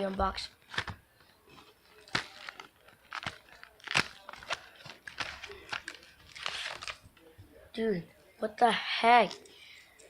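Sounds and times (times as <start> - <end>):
packaging crinkling and snapping: 0.6 - 1.0, 1.9 - 7.0.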